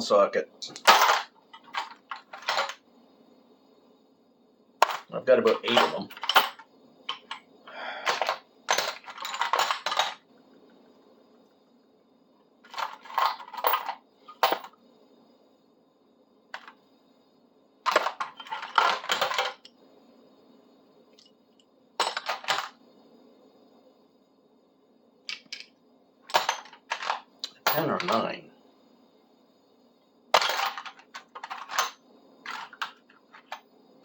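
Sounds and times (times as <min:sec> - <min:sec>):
metal sockets clinking and rattling: 0:00.7 - 0:02.8, 0:04.8 - 0:07.5, 0:08.1 - 0:10.2, 0:12.7 - 0:14.8, 0:17.9 - 0:19.7, 0:22.0 - 0:22.7, 0:30.4 - 0:33.6.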